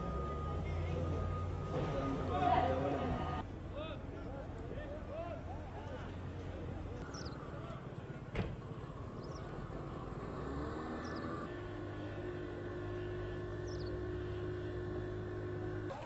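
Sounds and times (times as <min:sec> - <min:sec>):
engine running: 0:00.0 - 0:03.4, 0:08.0 - 0:16.0.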